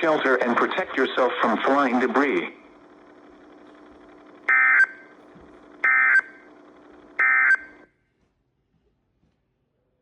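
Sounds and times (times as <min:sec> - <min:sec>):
digital data tone bursts: 0:04.5 - 0:05.1, 0:05.8 - 0:06.5, 0:07.2 - 0:07.8.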